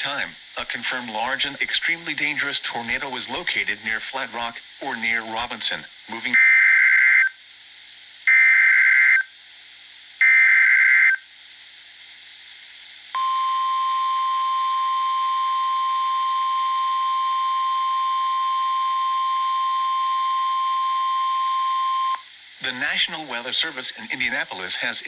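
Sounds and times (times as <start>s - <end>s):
steady single-pitch warning alarm: 6.3s - 7.4s, 8.3s - 9.3s, 10.2s - 11.2s, 13.2s - 22.3s.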